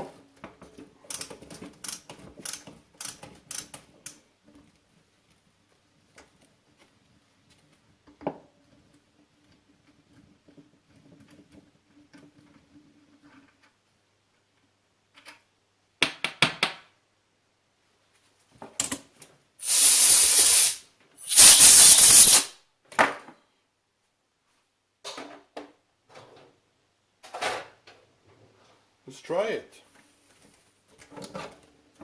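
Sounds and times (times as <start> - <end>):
compressed air hissing blasts: 19.6 - 22.5.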